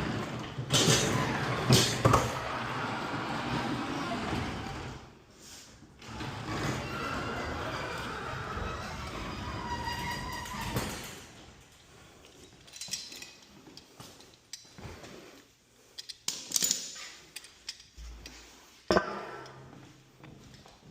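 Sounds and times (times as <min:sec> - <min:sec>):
metal tools clinking and knocking: 0:12.2 - 0:14.8.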